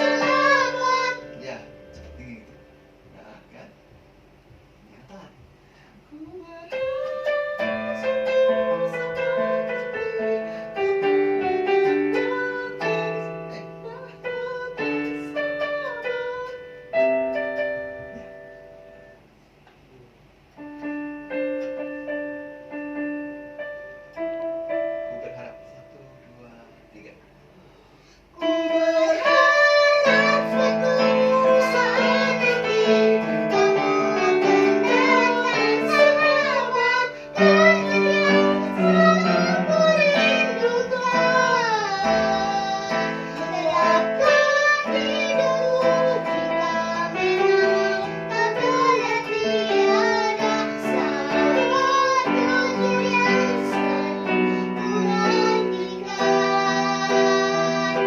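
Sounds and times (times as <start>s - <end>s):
child singing: 0.0s - 1.6s, 6.1s - 16.6s, 28.4s - 58.0s
instrumental accompaniment: 0.0s - 58.0s.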